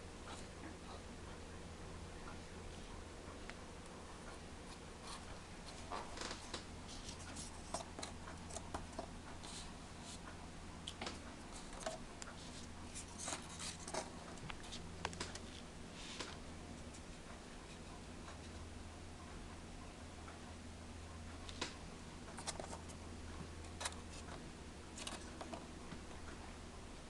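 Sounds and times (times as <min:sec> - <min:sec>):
steady low hum: 0:00.0 - 0:27.0
light clicks and scratches: 0:02.2 - 0:18.7, 0:21.4 - 0:26.4.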